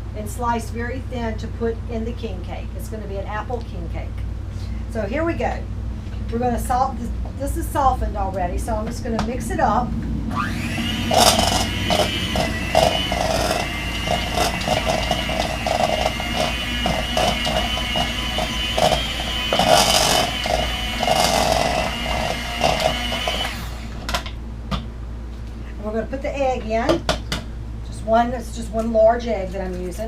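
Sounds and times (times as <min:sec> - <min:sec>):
electric mixer motor whine: 0:10.3 - 0:24.2.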